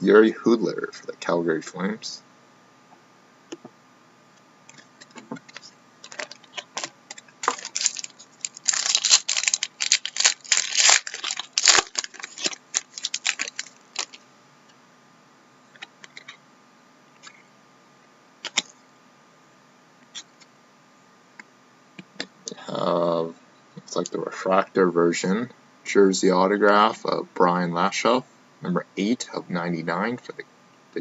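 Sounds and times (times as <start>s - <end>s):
crinkly rustling: 5.4s - 14.2s.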